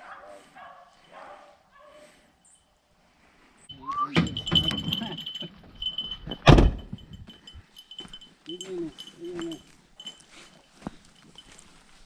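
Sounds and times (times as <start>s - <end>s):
collar bell jingling: 3.7s - 12.0s
loud thump: 6.4s - 7.0s.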